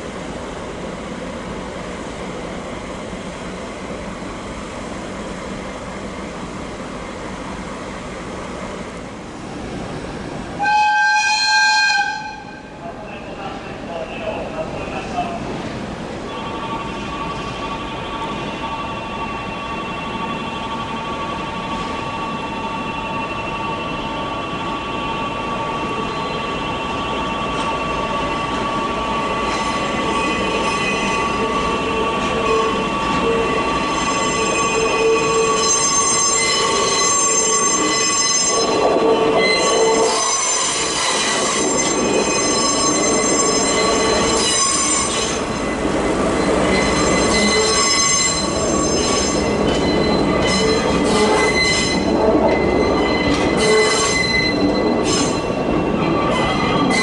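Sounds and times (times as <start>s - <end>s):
train rolling rumble: 0.0s - 57.0s
train wheels squealing: 16.4s - 57.0s.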